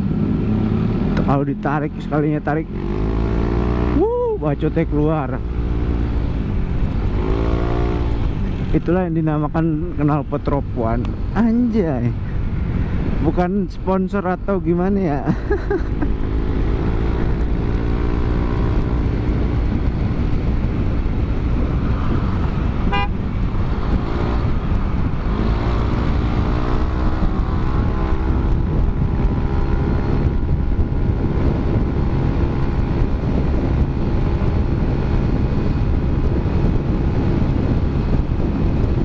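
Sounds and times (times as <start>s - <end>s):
road and wind rumble: 0.0s - 39.0s.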